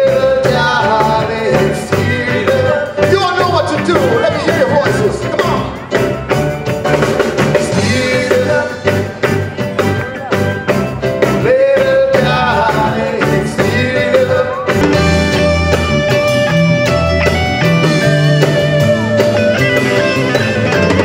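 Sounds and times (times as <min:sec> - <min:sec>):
voices singing along: 0:00.0 - 0:05.9, 0:07.6 - 0:10.2, 0:11.2 - 0:15.6
steel drum band playing reggae: 0:00.0 - 0:21.0.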